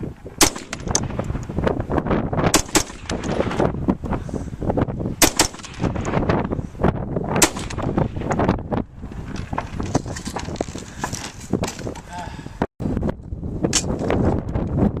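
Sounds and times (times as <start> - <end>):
rifle shots: 0.4 - 1.2, 2.4 - 3.6, 5.2 - 6.2, 7.4 - 8.3.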